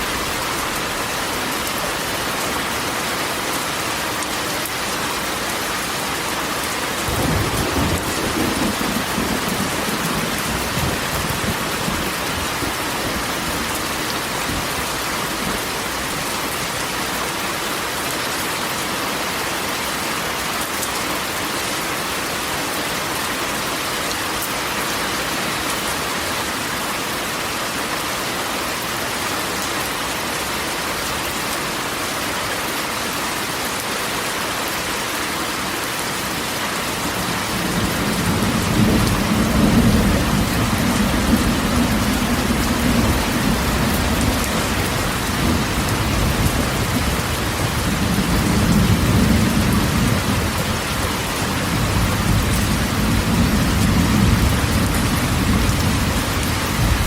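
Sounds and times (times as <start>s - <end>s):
rain on a tin roof: 0.0s - 57.0s
thunder rumbling: 7.1s - 13.3s, 37.4s - 50.8s, 51.6s - 57.0s.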